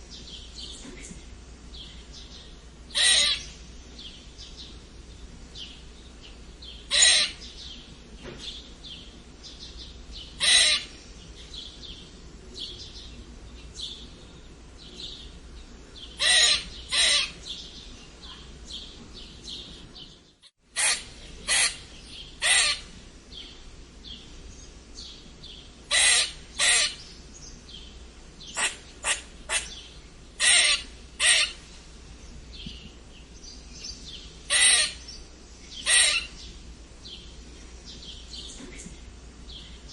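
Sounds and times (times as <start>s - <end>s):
squirrel squeaking: 3.0s - 3.5s, 6.9s - 7.4s, 10.4s - 10.9s, 16.2s - 17.4s, 20.8s - 22.9s, 25.9s - 27.0s, 30.4s - 31.6s, 34.5s - 35.1s, 35.8s - 36.4s.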